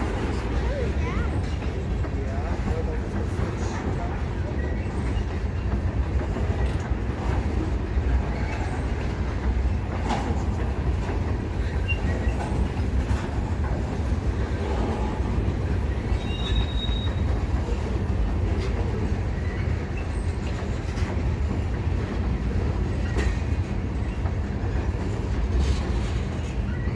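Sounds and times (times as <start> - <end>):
freight train cars rumbling past: 0.0 - 26.9
wheel squeal: 11.6 - 13.1, 16.0 - 17.4.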